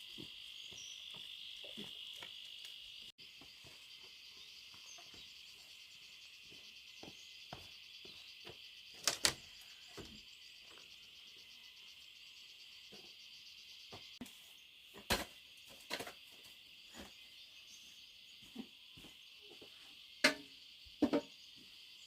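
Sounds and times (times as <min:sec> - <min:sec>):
crickets chirping: 0:00.0 - 0:22.0.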